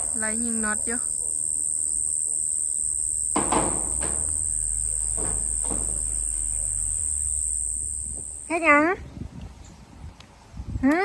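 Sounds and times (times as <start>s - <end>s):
low hum: 0.0s - 8.6s
night insects trilling: 0.0s - 8.6s.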